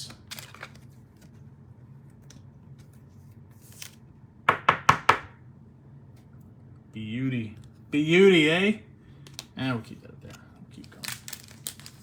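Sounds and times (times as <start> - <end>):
trading cards being handled: 10.3 - 12.0.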